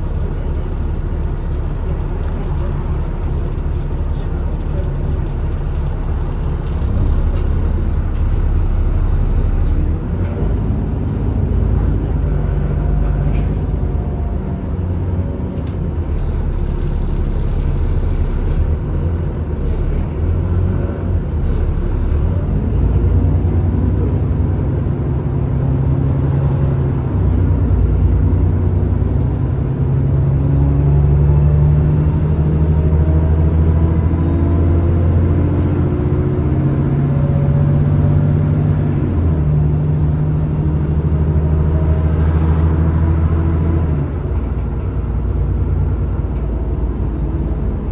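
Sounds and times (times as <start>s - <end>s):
bus engine rumbling: 0.0s - 47.9s.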